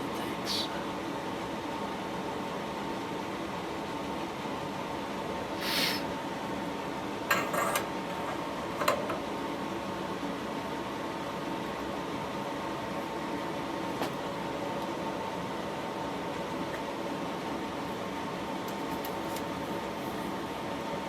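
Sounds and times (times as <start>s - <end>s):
workshop machinery hum with whine: 0.0s - 21.0s
short hiss: 5.6s - 6.0s.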